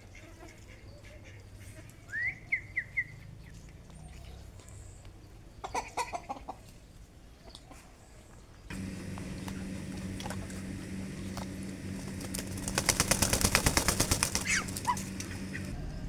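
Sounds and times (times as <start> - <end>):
duck calls: 8.7 - 15.8
fast rattle of sharp clicks: 8.7 - 15.8
steady low hum: 8.7 - 16.0.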